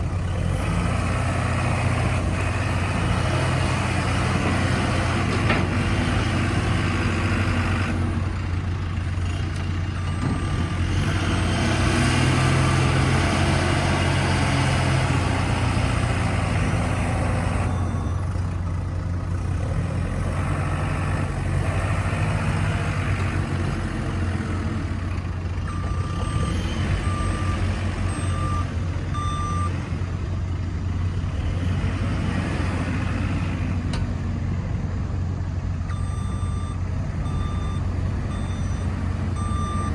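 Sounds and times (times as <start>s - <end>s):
diesel engine running: 0.0s - 39.9s
reversing alarm beeping: 17.4s - 18.3s, 25.7s - 29.8s, 35.9s - 39.9s.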